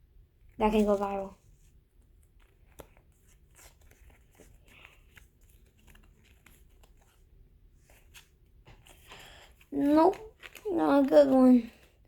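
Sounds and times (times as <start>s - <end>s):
trading cards clicking and rustling: 2.1s - 7.3s, 7.9s - 12.0s.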